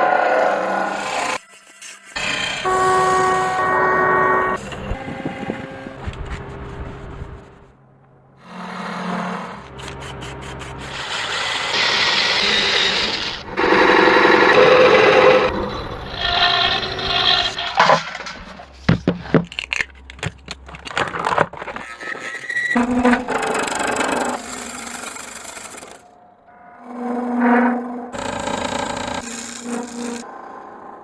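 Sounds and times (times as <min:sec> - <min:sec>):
power tool on wood: 0:10.8 - 0:18.0, 0:28.2 - 0:30.3
scraping and rubbing wood: 0:16.2 - 0:22.0, 0:28.1 - 0:30.3.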